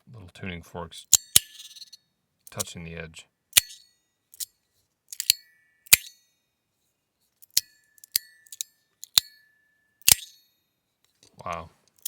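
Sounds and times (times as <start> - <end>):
metal slider clacking: 5.1 - 6.2, 10.0 - 10.4.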